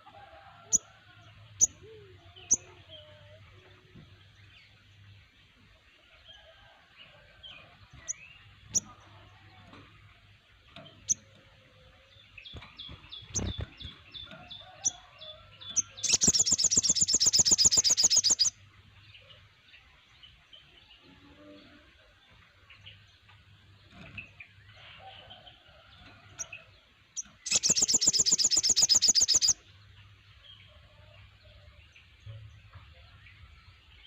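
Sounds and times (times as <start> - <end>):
birds chirping: 7.6 - 21.7, 22.4 - 30.8
rapid bird trill: 16.0 - 18.5, 27.4 - 29.6.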